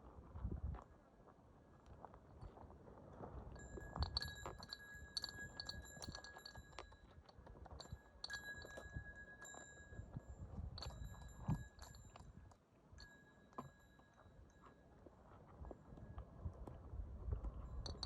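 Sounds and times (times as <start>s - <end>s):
chime-like metallic ringing: 3.6s - 7.0s, 7.8s - 12.2s
light metallic clicking and clinking: 3.6s - 14.8s, 17.7s - 18.0s.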